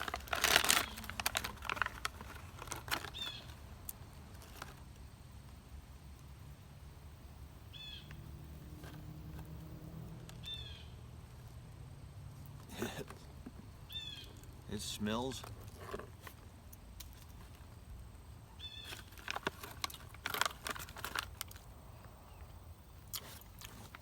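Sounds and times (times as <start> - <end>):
packaging crinkling and clicking: 0.0 - 4.8, 18.8 - 21.7
bird chirping: 3.0 - 3.6, 7.6 - 8.4, 10.3 - 11.0, 13.8 - 15.3, 18.4 - 19.1.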